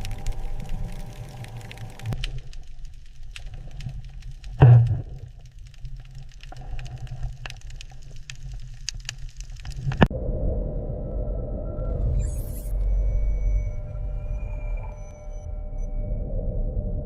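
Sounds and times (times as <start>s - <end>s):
low steady rumble: 0.0s - 5.6s.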